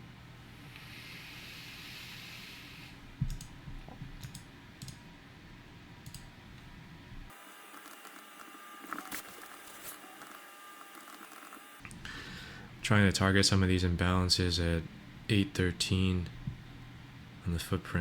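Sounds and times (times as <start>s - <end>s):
computer clicks: 4.2s - 5.0s.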